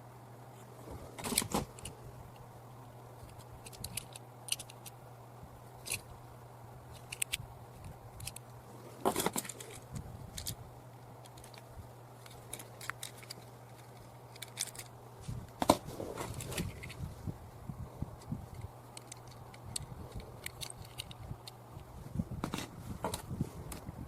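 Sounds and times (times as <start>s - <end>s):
steady low hum: 0.0s - 24.0s
plastic toy cars clicking: 3.2s - 5.0s, 6.9s - 10.6s, 11.2s - 15.0s, 15.6s - 17.0s, 18.2s - 23.9s.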